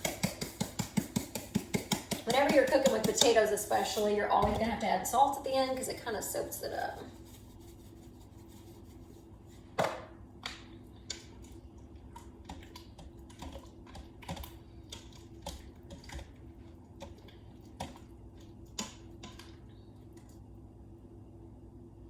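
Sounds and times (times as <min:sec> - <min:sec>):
kitchen utensils clicking and tapping: 0:00.0 - 0:04.9
faint steady hum: 0:00.0 - 0:22.0.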